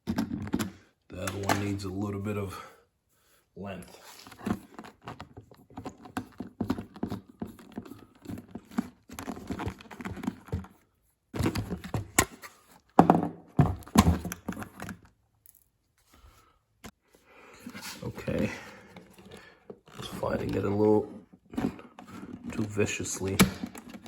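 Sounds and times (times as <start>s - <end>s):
clicks scrapes and rattles on plastic: 4.2s - 12.6s, 17.7s - 24.0s.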